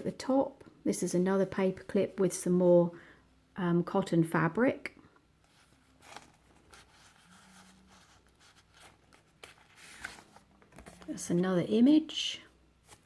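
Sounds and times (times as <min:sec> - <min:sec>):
paper rustling: 0:05.4 - 0:11.4.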